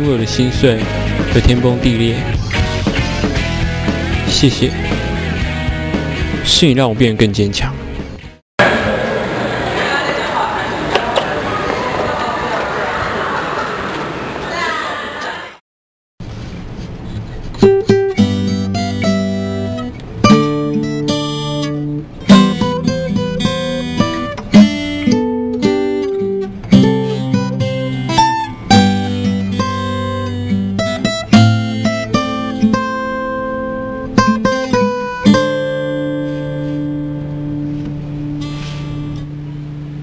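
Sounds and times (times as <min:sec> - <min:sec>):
acoustic guitar strumming: 0:17.5 - 0:40.0.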